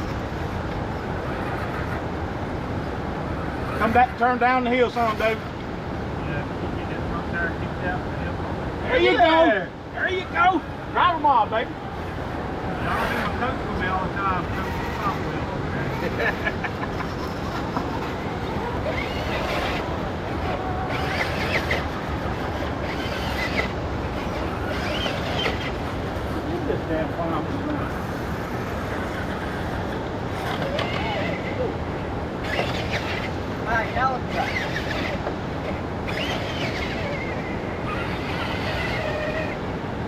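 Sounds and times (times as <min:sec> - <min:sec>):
steady rushing noise: 0:00.0 - 0:40.0
electric motor whirring: 0:11.9 - 0:31.6, 0:32.4 - 0:39.6.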